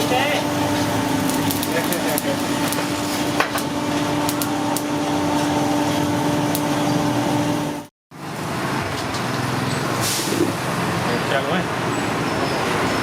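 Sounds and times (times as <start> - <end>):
noisy background: 0.0 - 7.9.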